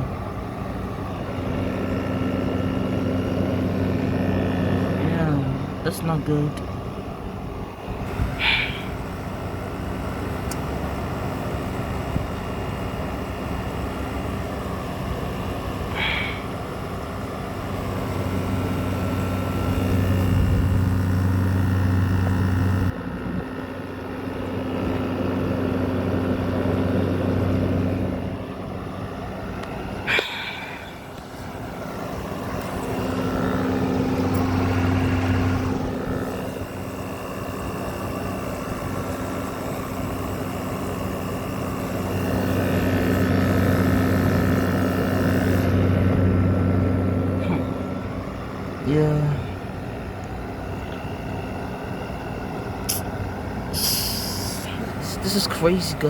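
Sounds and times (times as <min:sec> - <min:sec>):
compressor humming: 0:00.0 - 0:56.0
fan rushing: 0:00.0 - 0:56.0
sharp click: 0:52.9 - 0:53.1.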